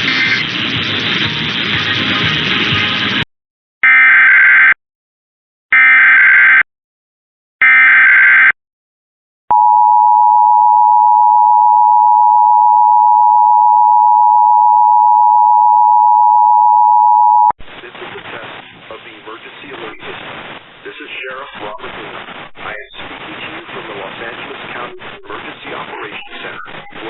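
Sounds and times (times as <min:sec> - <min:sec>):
radio program audio: 0:00.0 - 0:03.3, 0:16.8 - 0:27.0.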